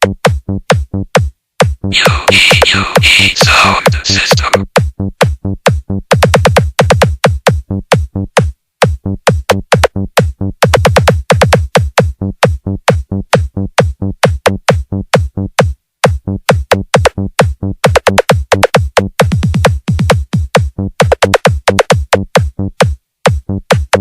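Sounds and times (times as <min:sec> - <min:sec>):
electronic dance music: 0:01.9 - 0:04.7.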